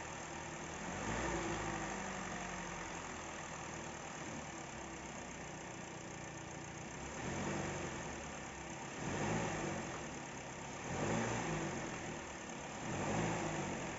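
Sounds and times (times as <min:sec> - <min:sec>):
car engine revving: 0:00.6 - 0:03.6, 0:06.9 - 0:13.9.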